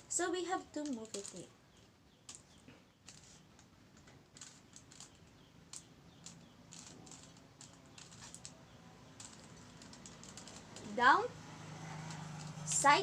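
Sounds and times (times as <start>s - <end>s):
puzzle cube plastic clicks: 0.8s - 1.4s, 2.3s - 11.0s.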